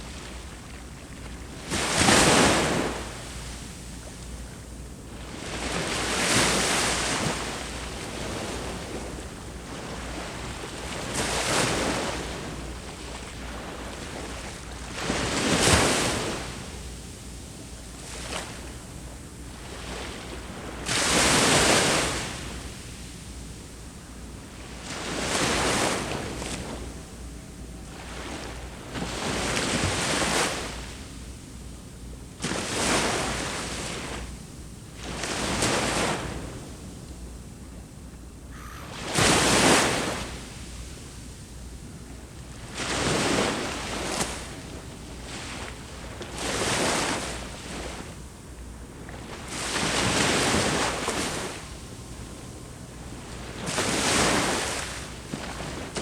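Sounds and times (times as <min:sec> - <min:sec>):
low sea background: 0:00.0 - 0:56.0
waves breaking on shore: 0:38.6 - 0:40.4.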